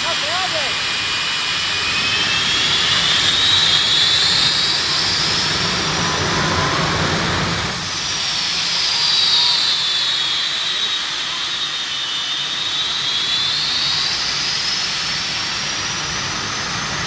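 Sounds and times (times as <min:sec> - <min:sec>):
jet turbine engine whine: 0:00.0 - 0:17.0.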